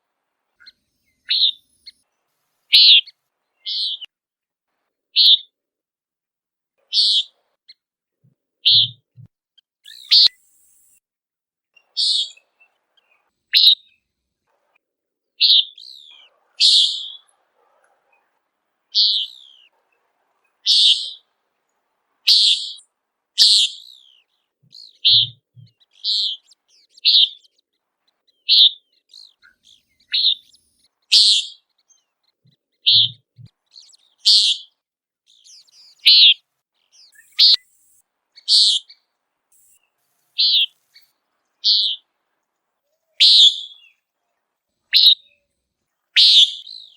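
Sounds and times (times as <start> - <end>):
bird nasal peent call: 0.6 - 2.0, 2.7 - 4.1, 6.9 - 7.3, 8.7 - 9.0, 9.8 - 10.8, 11.8 - 12.6, 13.5 - 13.8, 15.4 - 18.3, 18.9 - 19.8, 20.5 - 21.3, 22.3 - 22.8, 23.4 - 27.5, 28.5 - 31.7, 32.8 - 37.8, 38.4 - 42.0, 43.2 - 44.0, 44.9 - 45.3, 46.2 - 46.9.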